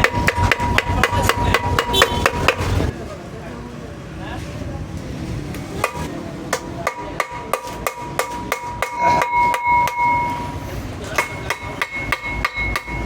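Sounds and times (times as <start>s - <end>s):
hammer on sheet metal: 0.0s - 2.8s, 5.8s - 13.0s.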